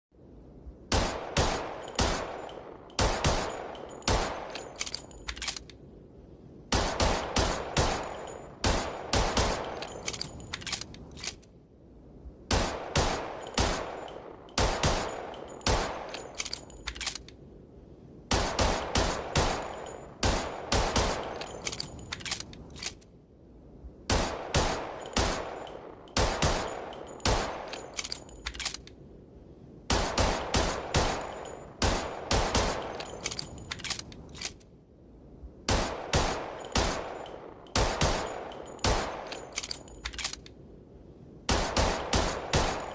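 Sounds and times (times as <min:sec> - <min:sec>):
pistol shots echoing: 0:00.9 - 0:04.8, 0:06.7 - 0:10.0, 0:12.5 - 0:16.3, 0:18.3 - 0:21.7, 0:24.1 - 0:27.9, 0:29.9 - 0:33.3, 0:35.7 - 0:39.6, 0:41.5 - 0:42.9.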